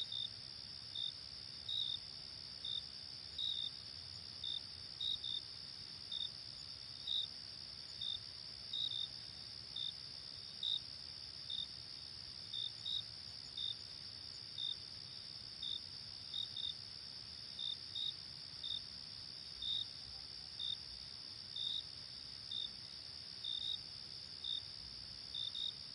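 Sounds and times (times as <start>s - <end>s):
cricket chirps: 0.0s - 25.9s.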